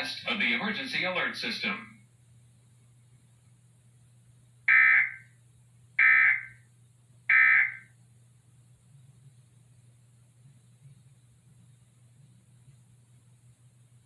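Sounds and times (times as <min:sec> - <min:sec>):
electronic data bursts: 0:04.7 - 0:05.2, 0:06.0 - 0:06.6, 0:07.3 - 0:07.8.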